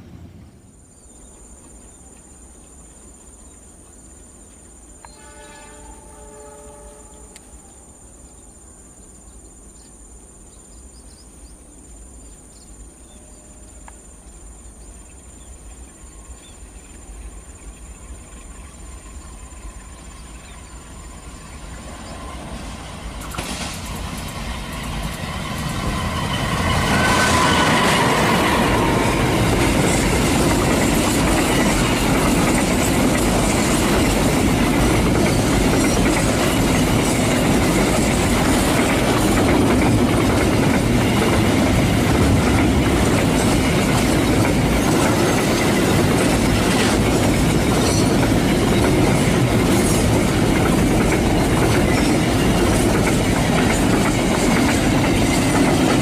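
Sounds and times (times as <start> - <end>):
train engine and wheel noise: 0.0 - 56.0
distant locomotive horn: 5.0 - 7.8, 25.4 - 30.0.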